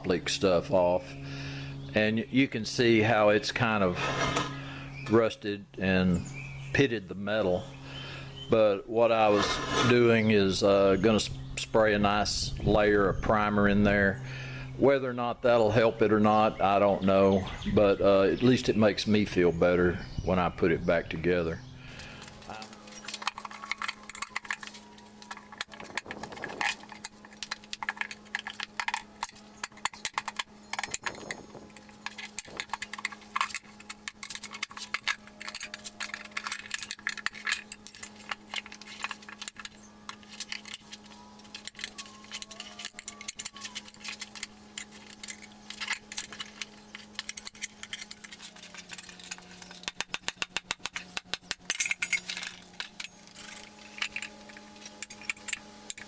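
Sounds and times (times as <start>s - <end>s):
steady low hum: 0.0s - 56.0s
small metallic clinks and rattles: 21.9s - 56.0s.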